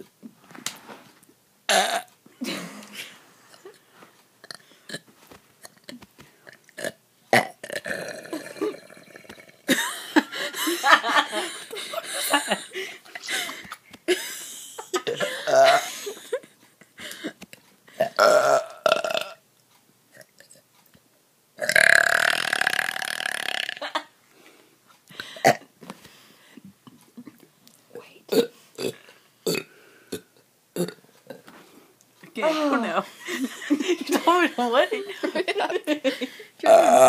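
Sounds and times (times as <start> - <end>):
people burping: 1.7 - 3.0, 6.8 - 10.0, 15.0 - 15.9, 18.0 - 19.4, 21.6 - 24.0, 25.3 - 25.7, 28.3 - 31.4, 36.6 - 37.0.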